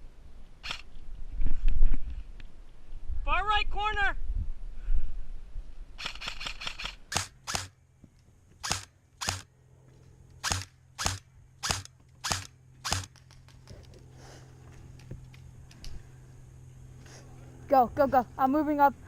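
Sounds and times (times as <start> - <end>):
airsoft gun shots: 6.0 - 7.8, 8.6 - 9.5, 10.4 - 13.3.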